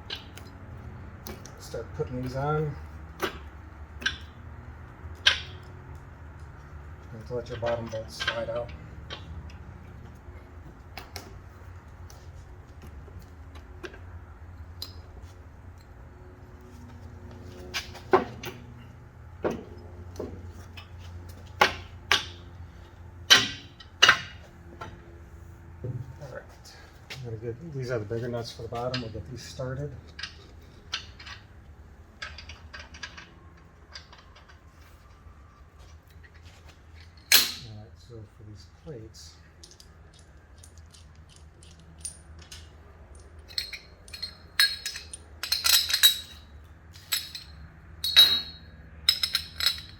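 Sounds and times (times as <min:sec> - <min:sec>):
metallic clicks of bolts and plates: 0:04.0 - 0:04.4, 0:05.1 - 0:05.8, 0:07.4 - 0:09.6, 0:23.3 - 0:24.3, 0:32.2 - 0:34.6, 0:37.0 - 0:37.7, 0:39.6 - 0:49.9.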